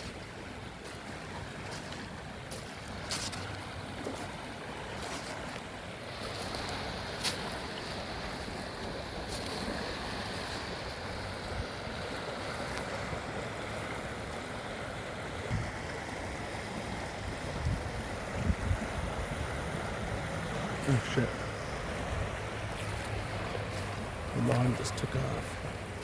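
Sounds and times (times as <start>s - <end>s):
floodwater rushing: 0.0s - 26.0s.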